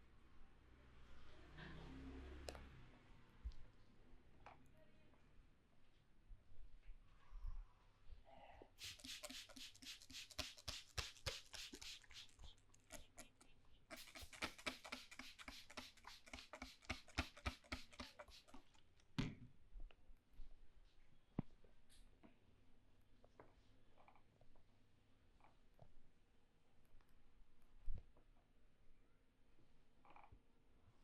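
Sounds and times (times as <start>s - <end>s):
hands tapping on a head: 8.8s - 12.4s, 14.0s - 18.6s.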